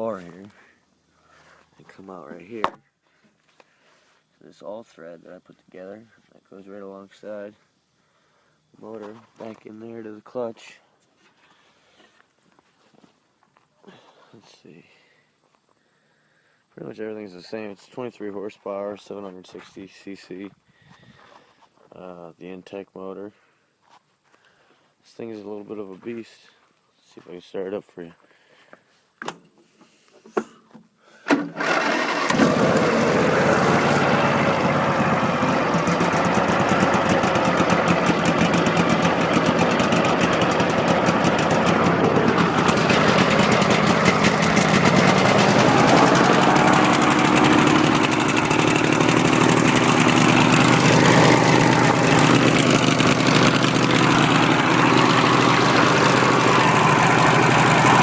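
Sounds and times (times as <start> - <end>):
riding mower engine starting: 31.2 - 58.0.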